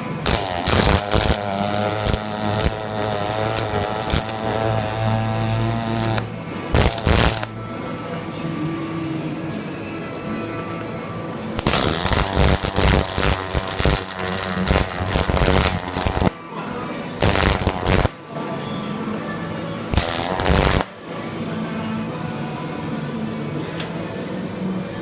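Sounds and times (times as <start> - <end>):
welding arc crackling on steel: 0.0 - 7.5, 11.6 - 16.4, 17.2 - 18.2, 19.9 - 21.0.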